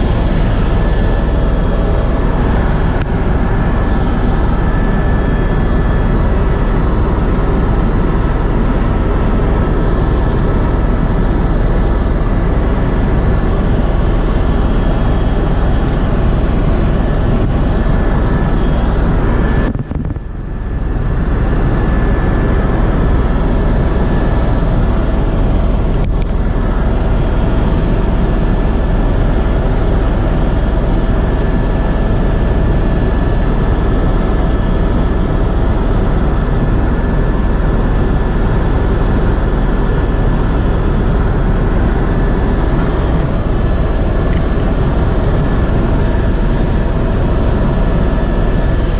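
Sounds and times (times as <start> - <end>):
helicopter in flight: 0.0 - 48.9.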